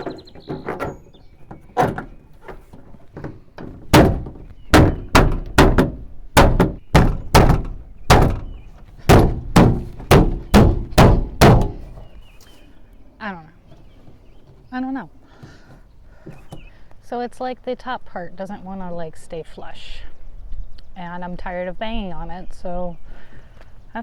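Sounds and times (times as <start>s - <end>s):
hand banging on door panel: 0.0s - 12.2s.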